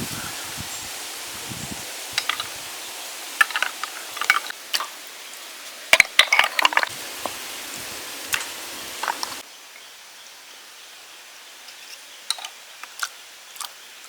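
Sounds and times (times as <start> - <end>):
steady hiss: 0.0 - 14.0
utensils clinking against cookware: 2.1 - 2.6, 3.4 - 4.9, 5.9 - 6.9.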